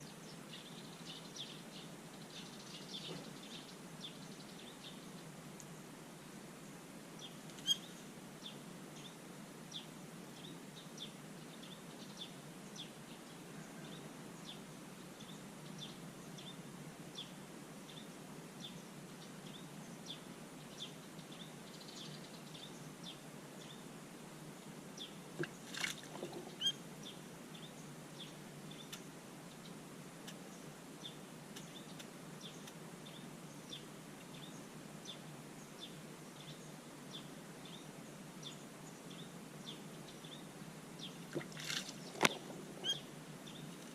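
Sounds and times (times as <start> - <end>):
faint steady hum: 0.0 - 43.9
bird chirping: 7.2 - 16.6, 25.0 - 29.8, 30.5 - 43.9.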